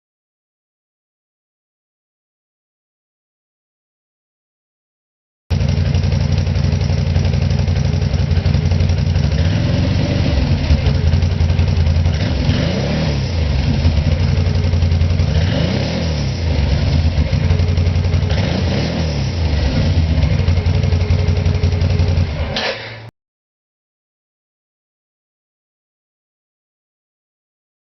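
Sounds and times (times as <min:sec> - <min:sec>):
atv engine idling and revving: 0:05.5 - 0:23.0.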